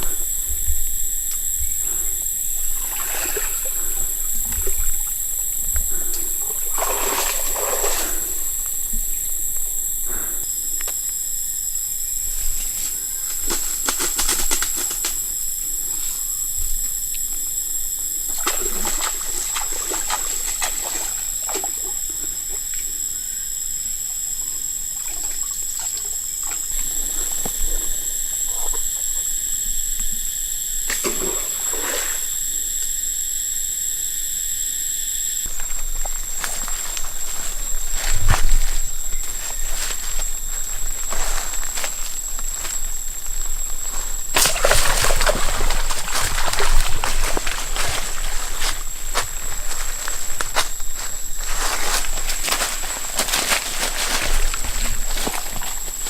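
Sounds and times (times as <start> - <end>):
high-pitched outdoor hiss: 0.0 - 56.0
water splashing and trickling: 6.4 - 8.4, 43.2 - 50.3.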